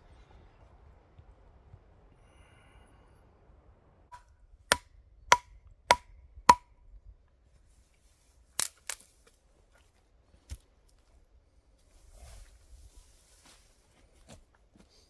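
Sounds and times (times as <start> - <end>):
machete chopping branches: 4.7 - 6.6, 8.6 - 9.3.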